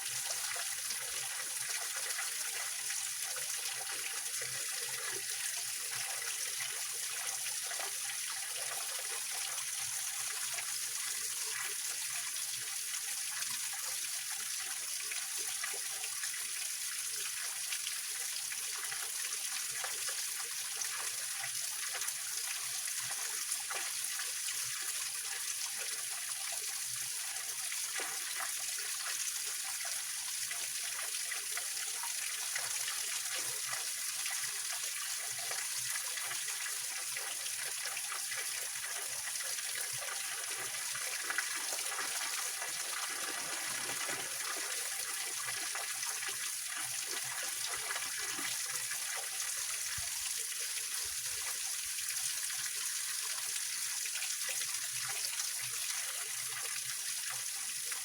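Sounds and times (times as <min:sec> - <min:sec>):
water splashing over rocks: 0:40.4 - 0:45.7.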